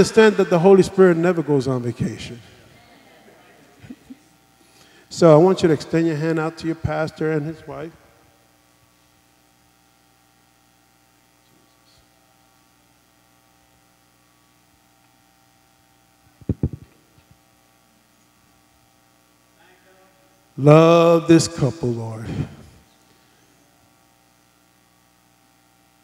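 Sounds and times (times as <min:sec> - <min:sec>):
faint electrical hum: 0:00.0 - 0:26.0.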